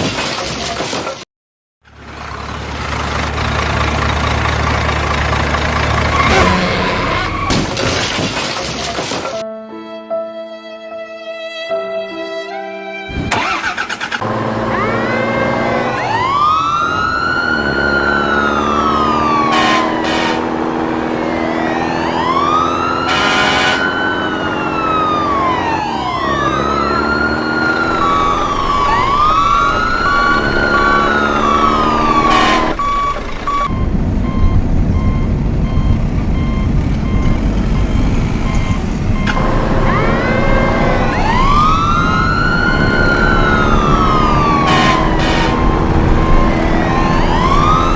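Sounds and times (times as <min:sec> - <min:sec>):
low engine rumble: 0:01.9 - 0:07.5, 0:27.7 - 0:47.9
emergency siren wailing: 0:04.0 - 0:07.8, 0:13.4 - 0:47.9
two-tone siren: 0:06.0 - 0:07.8, 0:13.7 - 0:47.9.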